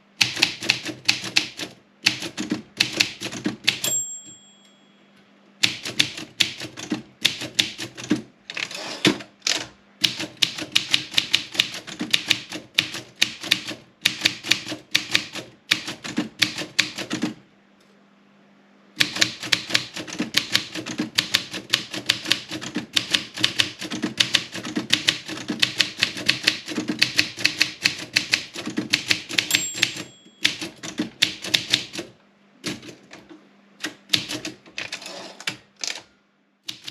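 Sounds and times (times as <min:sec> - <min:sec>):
manual typewriter typing: 0:00.2 - 0:04.0, 0:05.6 - 0:17.4, 0:19.0 - 0:33.2, 0:33.8 - 0:36.1, 0:36.7 - 0:36.9
typewriter margin bell ringing: 0:03.8 - 0:05.0, 0:29.4 - 0:30.8.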